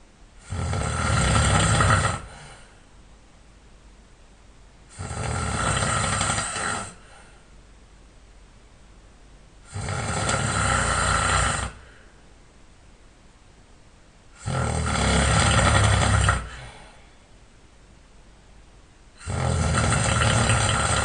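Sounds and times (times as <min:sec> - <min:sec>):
person snoring loudly: 0:00.4 - 0:02.6, 0:04.9 - 0:07.2, 0:09.6 - 0:12.0, 0:14.4 - 0:16.9, 0:19.2 - 0:21.0.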